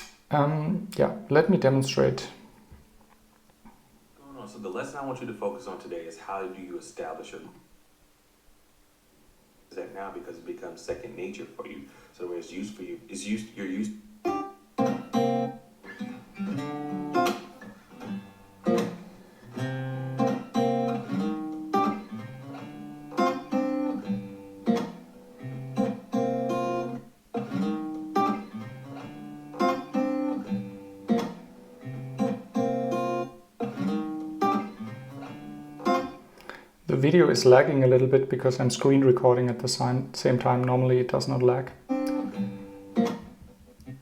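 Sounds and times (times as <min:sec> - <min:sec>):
acoustic guitar playing: 0:09.9 - 0:44.0.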